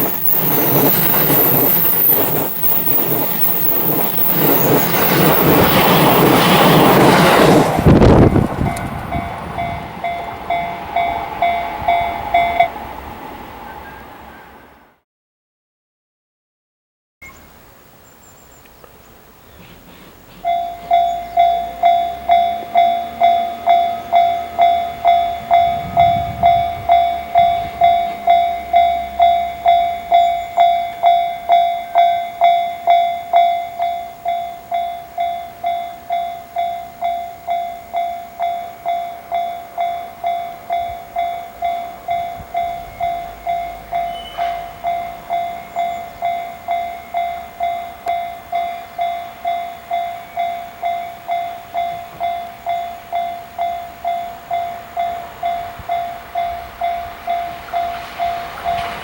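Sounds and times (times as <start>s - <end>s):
level-crossing warning bell: 0.0s - 12.9s, 20.4s - 59.0s.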